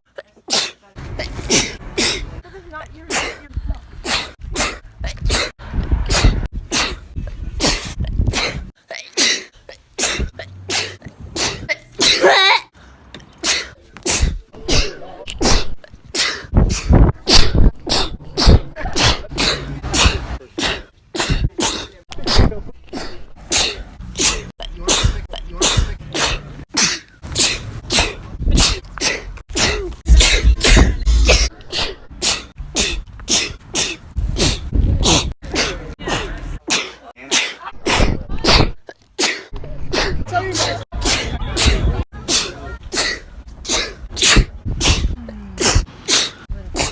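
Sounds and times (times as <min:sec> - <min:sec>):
woman sneezing: 0:09.2 - 0:12.7, 0:23.5 - 0:46.9.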